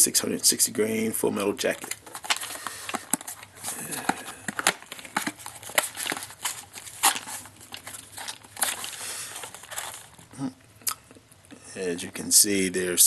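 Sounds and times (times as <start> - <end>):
clicks and knocks of cartridges handled: 1.8 - 10.2.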